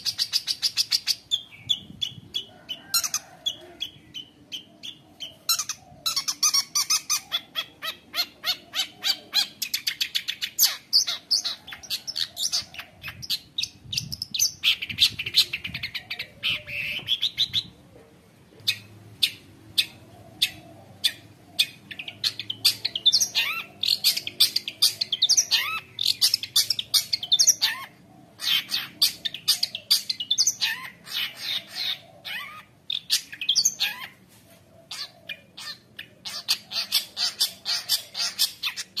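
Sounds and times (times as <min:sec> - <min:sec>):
bird singing chattering notes: 0:03.1 - 0:17.7, 0:18.6 - 0:34.2.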